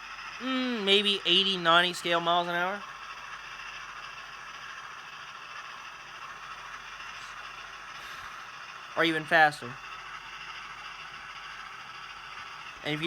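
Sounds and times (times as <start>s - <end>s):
locomotive sound decoder: 0.0s - 13.0s
model train motor whirring rattle: 0.0s - 13.0s.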